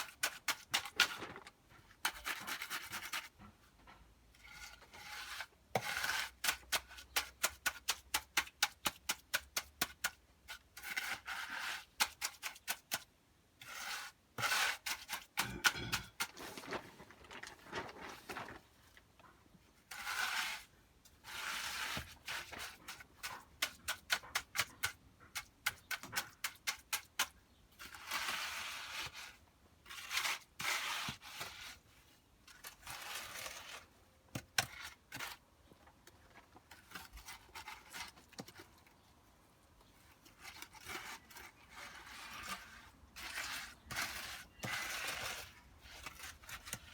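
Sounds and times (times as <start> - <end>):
rasping scrapes of concrete: 4.3 - 16.6, 19.8 - 31.9, 32.5 - 33.9, 40.1 - 46.9.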